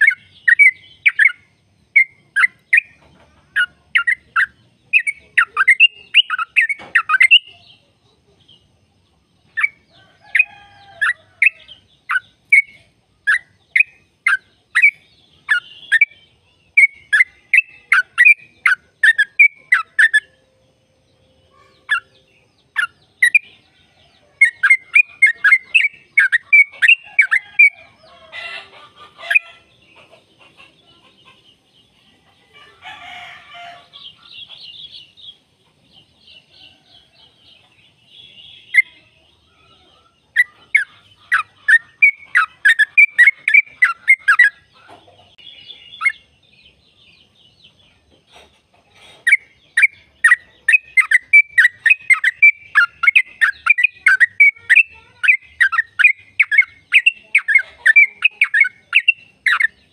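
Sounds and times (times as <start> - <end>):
bird singing whistled notes: 0.0 - 3.0, 3.6 - 7.6, 9.6 - 27.8, 39.6 - 44.6, 49.3 - 59.9
bird chattering: 0.0 - 7.7, 9.4 - 20.4, 21.4 - 23.7, 24.4 - 35.2, 39.9 - 46.3, 48.3 - 59.9.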